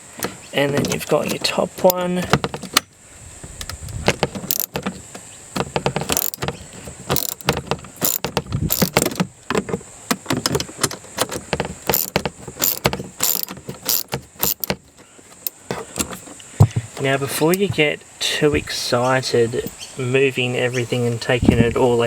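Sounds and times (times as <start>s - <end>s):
ratchet wrench clicking: 3.6s - 4.9s, 5.6s - 9.3s, 10.1s - 14.8s.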